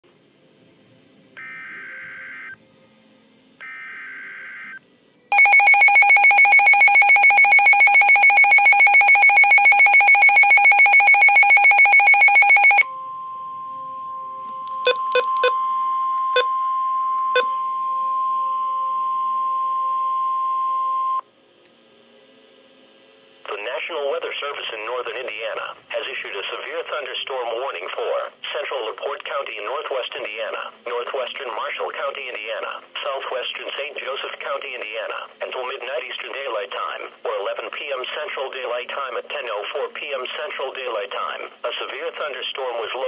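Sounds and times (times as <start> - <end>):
pulsing electronic alarm: 1.4 - 2.6, 3.6 - 21.2
steady warning tone: 3.6 - 21.2.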